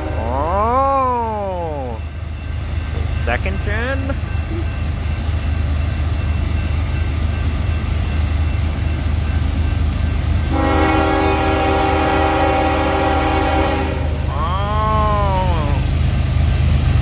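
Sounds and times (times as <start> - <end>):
locomotive air horn chord: 0.0 - 0.3, 10.4 - 14.3
wheel and rail noise: 0.0 - 13.8
locomotive engine drone: 0.0 - 17.0.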